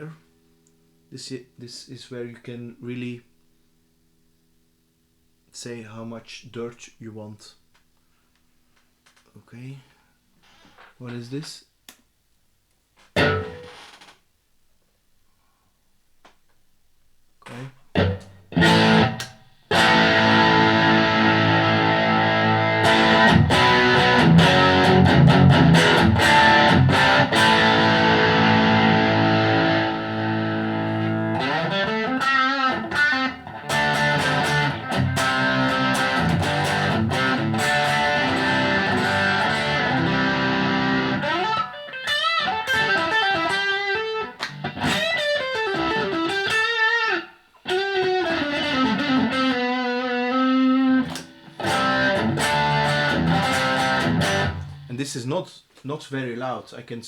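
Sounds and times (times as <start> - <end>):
electric guitar playing: 13.2 - 13.8, 17.9 - 54.9.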